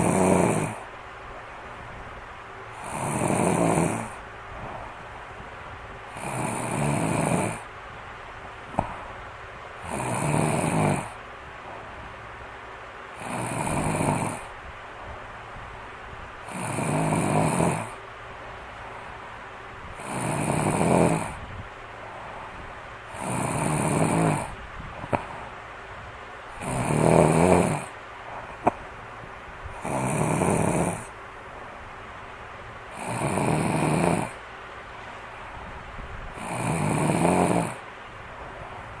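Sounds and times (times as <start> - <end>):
person snoring: 0.0 - 0.8, 2.8 - 4.2, 6.1 - 7.6, 9.8 - 11.2, 13.2 - 14.5, 16.4 - 18.0, 20.0 - 21.4, 23.1 - 25.4, 26.6 - 27.9, 29.8 - 31.2, 32.9 - 34.4, 36.3 - 37.8
quiet breathing: 0.0 - 0.9, 2.7 - 5.3, 8.6 - 9.2, 19.9 - 25.7, 29.7 - 31.8.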